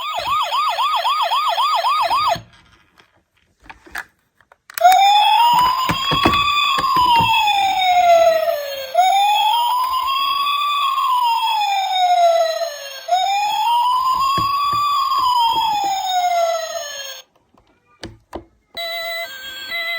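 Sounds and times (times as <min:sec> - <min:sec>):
toy ambulance siren wailing: 0:00.0 - 0:02.5, 0:04.8 - 0:17.3, 0:18.8 - 0:19.9
sharp knocks and clicks: 0:04.8 - 0:07.7, 0:14.0 - 0:16.0.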